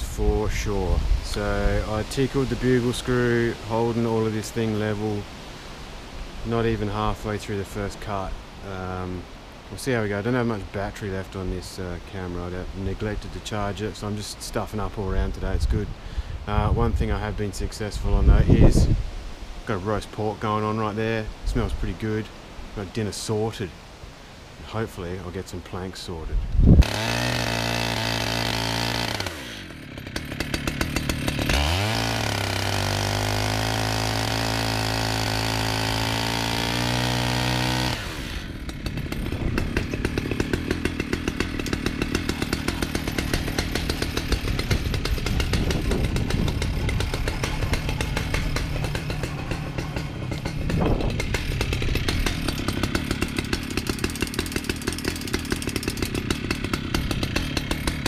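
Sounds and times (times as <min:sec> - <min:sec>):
chainsaw ripping a log: 0:00.0 - 0:05.4, 0:26.6 - 0:58.0.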